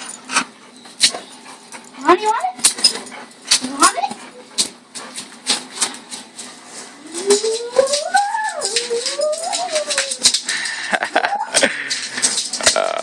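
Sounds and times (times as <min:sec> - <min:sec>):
puppy whining: 0:06.8 - 0:12.5.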